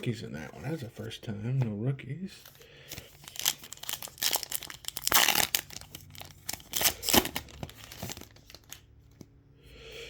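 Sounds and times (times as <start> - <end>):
wrapper tearing and crinkling: 3.2 - 8.8.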